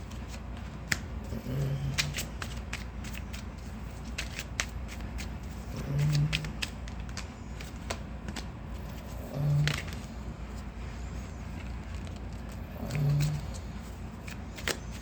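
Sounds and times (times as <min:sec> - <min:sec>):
cards being shuffled: 0:00.0 - 0:15.0.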